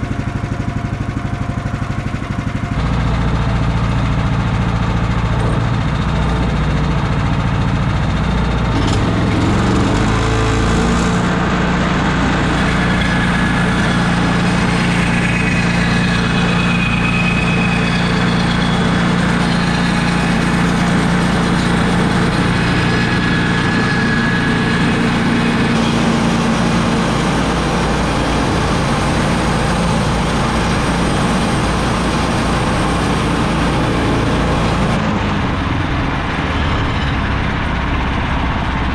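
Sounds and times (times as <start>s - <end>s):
gas engine droning: 0.0s - 38.9s
band blade sawing log: 8.8s - 35.0s
faint high whine: 11.0s - 38.9s.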